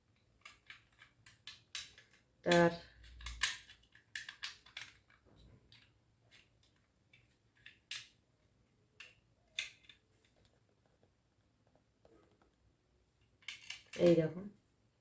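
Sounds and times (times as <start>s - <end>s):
plastic toys clicking: 0.1s - 8.2s, 9.0s - 10.5s, 13.4s - 14.2s.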